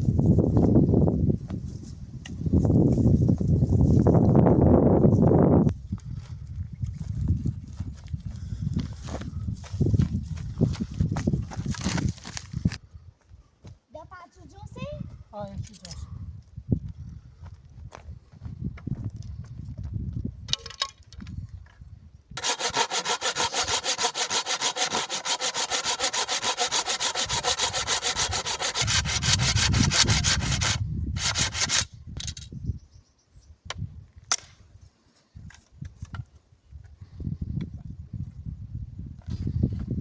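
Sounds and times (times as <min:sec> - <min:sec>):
hand saw cutting wood: 0:22.4 - 0:31.9.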